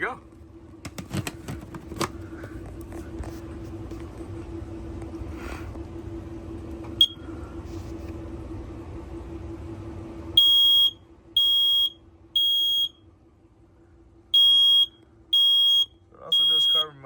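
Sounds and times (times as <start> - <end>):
steady low hum: 0.0 - 17.0
smoke alarm beeping: 7.0 - 7.2, 10.4 - 13.0, 14.3 - 17.0.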